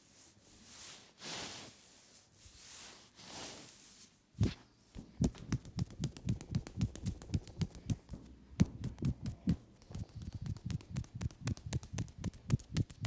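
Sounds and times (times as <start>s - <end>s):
hands patting on skin: 4.4s - 13.0s.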